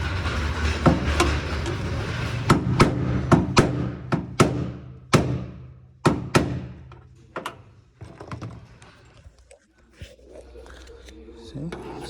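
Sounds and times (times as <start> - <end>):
hammer striking steel: 2.5 - 7.0.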